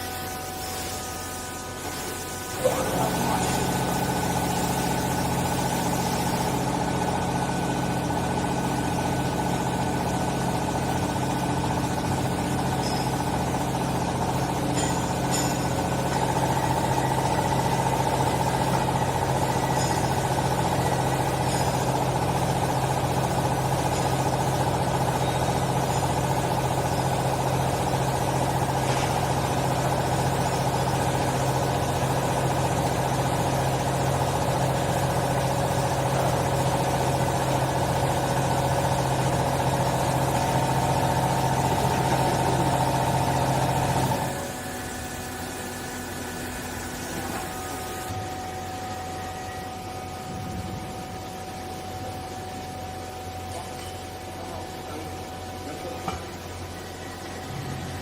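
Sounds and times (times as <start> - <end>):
baler motor and pump humming: 0.0 - 58.0.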